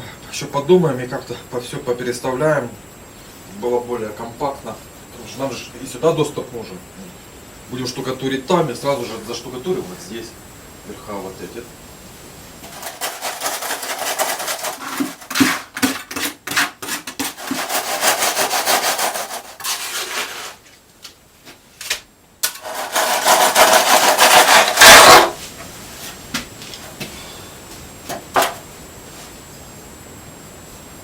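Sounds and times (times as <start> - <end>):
tool scraping wet concrete: 8.6 - 10.2, 12.6 - 20.7, 22.4 - 25.4.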